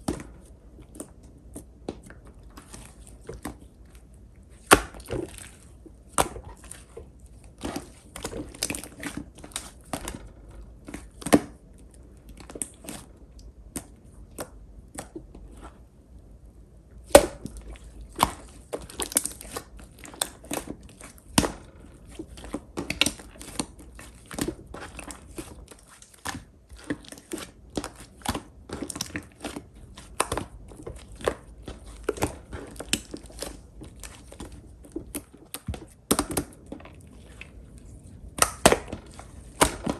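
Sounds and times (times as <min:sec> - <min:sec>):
slime sticky clicks and pops: 0:38.4 - 0:38.9.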